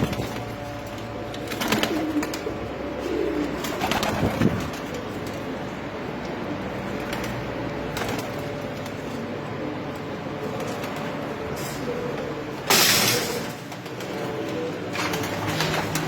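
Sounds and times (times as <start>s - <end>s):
pigeons cooing: 0.0s - 16.0s.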